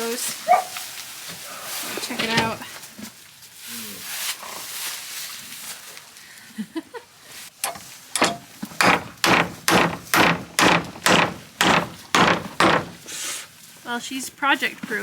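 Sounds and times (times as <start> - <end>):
light knocks: 7.6 - 13.0
hammer driving nails into wood: 7.6 - 13.1.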